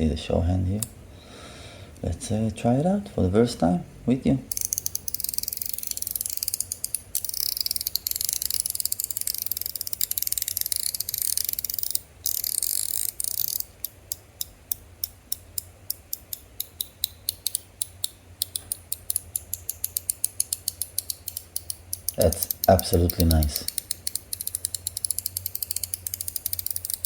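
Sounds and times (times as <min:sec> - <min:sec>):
metal fidget toy clicking: 0:04.5 - 0:27.0.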